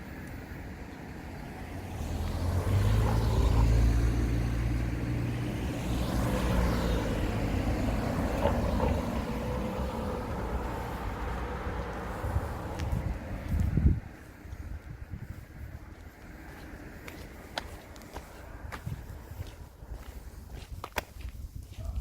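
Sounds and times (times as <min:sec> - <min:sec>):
car passing by: 0:01.0 - 0:14.6.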